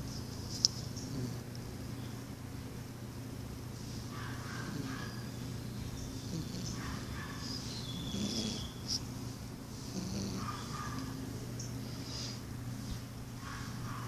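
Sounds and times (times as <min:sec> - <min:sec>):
puppy snoring: 0:01.0 - 0:01.5, 0:04.6 - 0:07.2, 0:07.9 - 0:09.1, 0:09.8 - 0:11.3.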